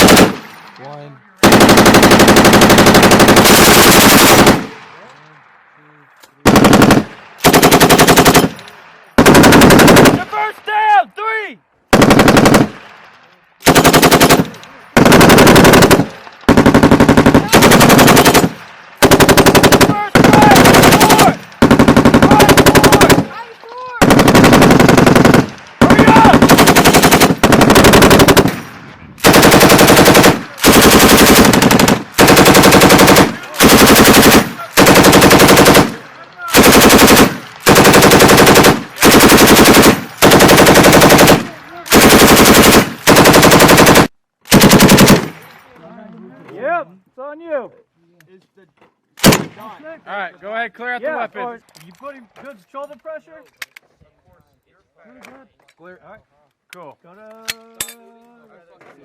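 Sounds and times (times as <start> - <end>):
machine gun bursts: 0.0 - 0.4, 1.4 - 4.6, 6.5 - 8.6, 9.2 - 10.2, 13.6 - 23.4, 24.0 - 28.6, 29.2 - 45.4.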